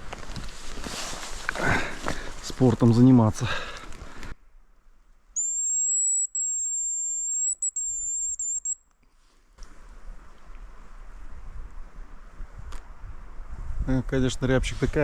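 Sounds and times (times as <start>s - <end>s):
high thin decoy whistle: 5.4s - 8.8s.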